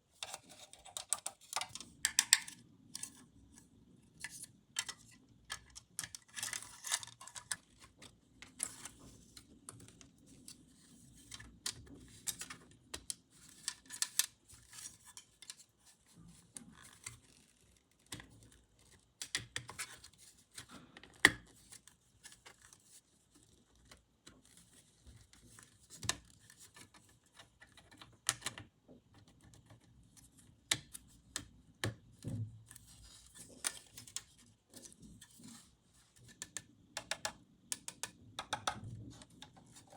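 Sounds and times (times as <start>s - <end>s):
plastic toy parts clicking: 0.2s - 3.2s.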